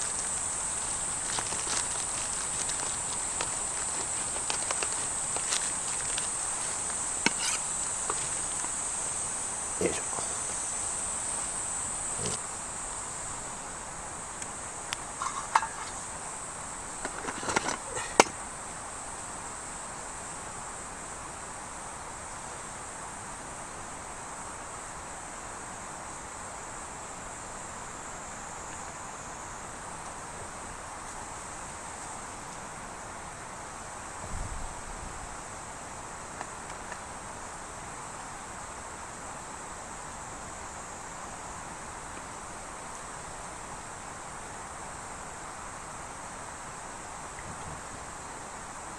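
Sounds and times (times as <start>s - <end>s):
insects calling: 0.0s - 48.9s
sharp clicks and knocks: 17.0s - 18.4s.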